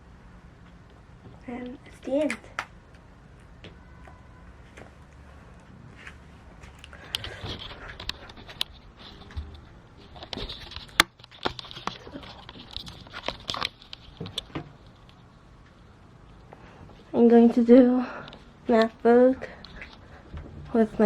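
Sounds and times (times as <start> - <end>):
small objects clicking and rustling: 6.7 - 16.5.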